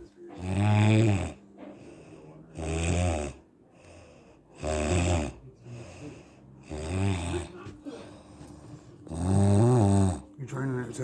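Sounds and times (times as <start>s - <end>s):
quiet breathing: 0.0s - 10.4s
woman snoring: 0.4s - 1.4s, 2.6s - 3.4s, 4.6s - 5.4s, 6.6s - 7.5s, 9.1s - 10.3s.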